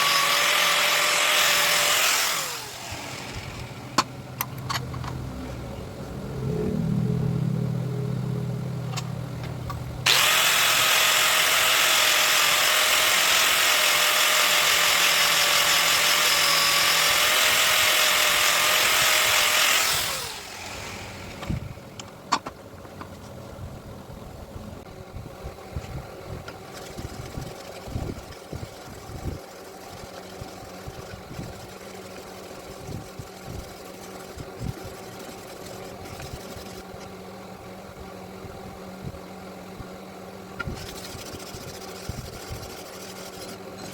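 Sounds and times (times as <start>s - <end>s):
sharpening machine grinding steel: 0.0s - 3.8s, 10.1s - 21.4s
motor winding down: 0.0s - 4.0s, 10.0s - 22.0s, 26.7s - 37.1s
steady hum: 18.1s - 43.9s.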